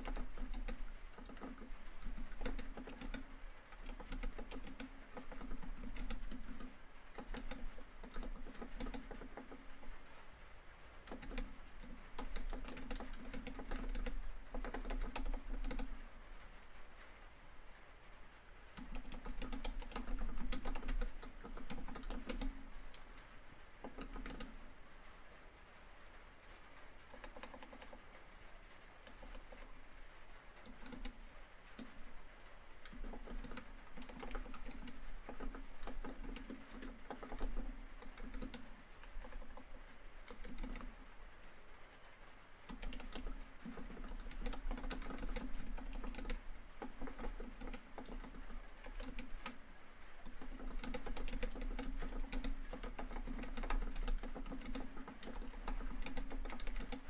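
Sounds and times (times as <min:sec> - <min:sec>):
laptop keyboard typing: 0:00.0 - 0:16.5, 0:18.4 - 0:24.8, 0:26.6 - 0:41.2, 0:42.6 - 0:57.0
rain on a tin roof: 0:00.0 - 0:57.0.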